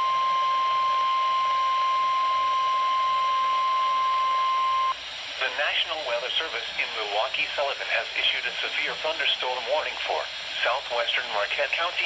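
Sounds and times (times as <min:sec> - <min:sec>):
steady high-pitched alarm tone: 0:00.0 - 0:05.0
radio static hiss: 0:04.8 - 0:12.0.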